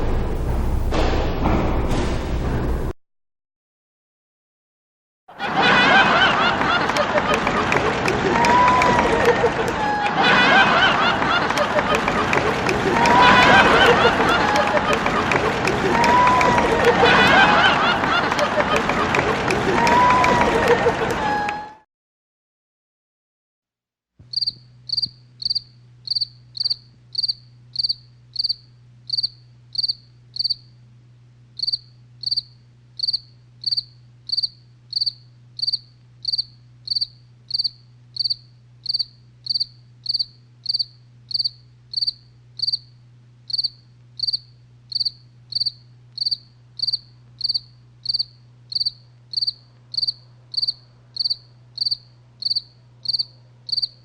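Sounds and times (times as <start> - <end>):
steady low hum: 5.7 - 19.9, 24.3 - 54.0
insect chirping: 24.3 - 30.8, 31.6 - 54.0.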